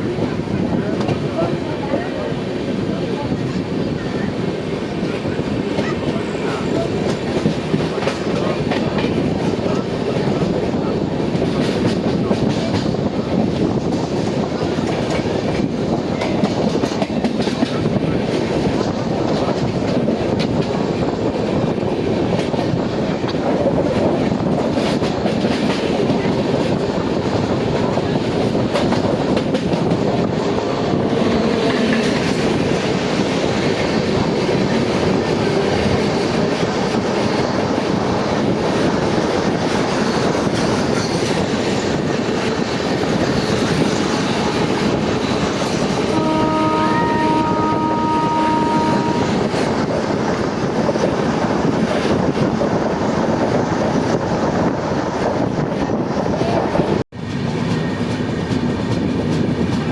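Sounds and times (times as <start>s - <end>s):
train wheels clattering on rails: 0.0s - 59.9s
train horn: 45.8s - 49.7s.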